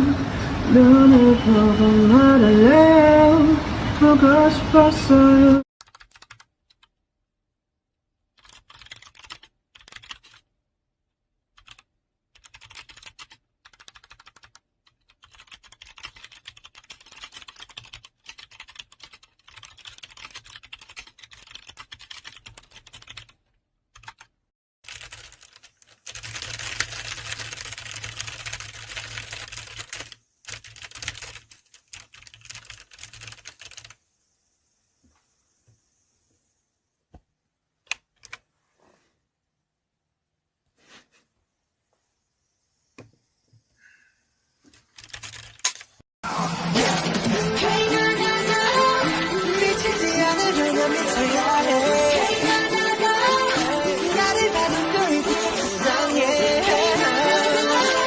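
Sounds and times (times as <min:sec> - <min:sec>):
computer keyboard typing: 0:05.8 - 0:06.9, 0:08.3 - 0:10.5, 0:11.5 - 0:34.0, 0:37.9 - 0:38.4, 0:44.7 - 0:46.0.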